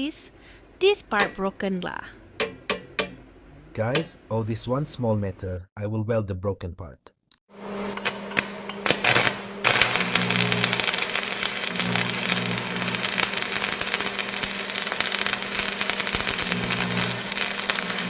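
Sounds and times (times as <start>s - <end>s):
arc welding crackling: 2.4s - 3.3s, 8.4s - 18.0s.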